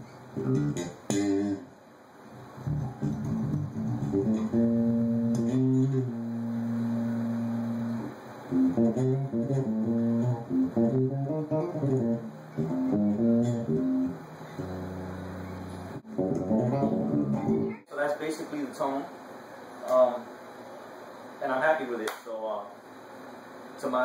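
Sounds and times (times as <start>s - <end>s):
electric bass guitar notes: 0.0s - 1.7s, 2.4s - 17.8s.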